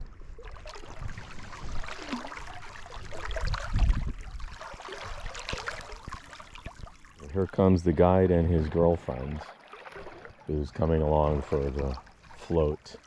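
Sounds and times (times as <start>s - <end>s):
wind buffeting microphone: 0.0s - 5.3s
running water: 0.0s - 13.0s.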